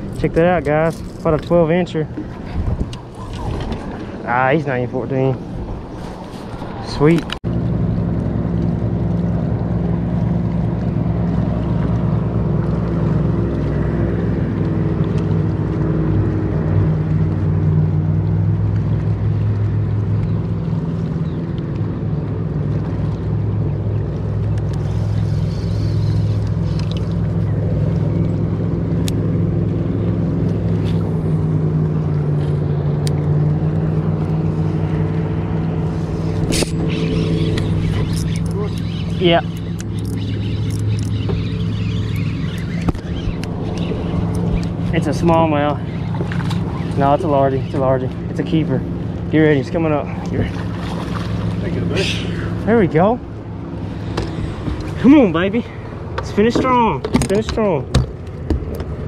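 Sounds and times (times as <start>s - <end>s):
outboard motor running: 0.0s - 59.0s.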